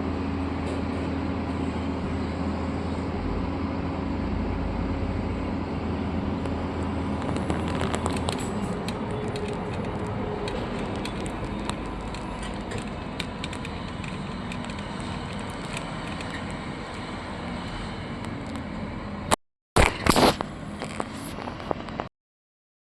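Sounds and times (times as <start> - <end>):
machine engine running: 0.0 - 19.4
clicks and crackles: 6.4 - 18.7, 19.8 - 22.1.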